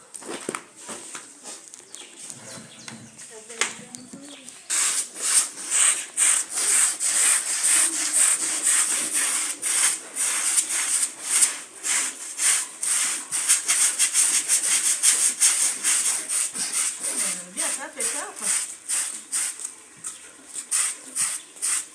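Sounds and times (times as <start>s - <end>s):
carpet being scrubbed by hand: 4.7s - 19.6s, 20.6s - 21.9s.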